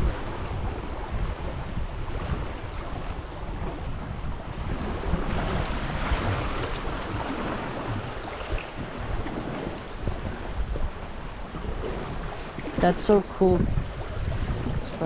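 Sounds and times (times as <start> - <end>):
river water washing: 0.0 - 15.0
wind rumbling on microphone: 0.0 - 15.0.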